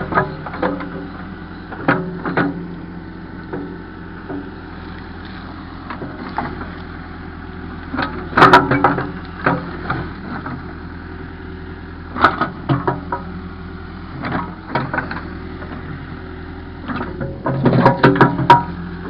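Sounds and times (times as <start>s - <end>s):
sharp clanks and knocks: 0.0s - 2.8s, 3.4s - 6.9s, 7.9s - 10.6s, 12.1s - 13.4s, 14.2s - 15.9s, 16.8s - 18.9s
diesel engine running: 0.0s - 19.0s.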